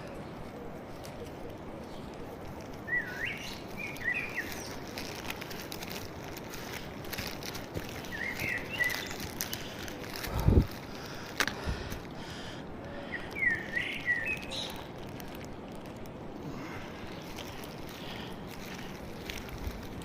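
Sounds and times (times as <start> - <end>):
bird singing warbling phrases: 0.0 - 5.2, 7.9 - 9.8, 13.0 - 15.0
steady background hiss: 0.0 - 20.0.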